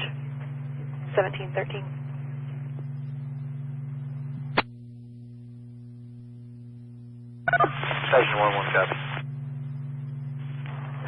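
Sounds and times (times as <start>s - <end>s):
radio channel hum: 0.0s - 11.0s
faint radio tones: 7.4s - 11.0s
station answering over radio: 7.5s - 9.2s.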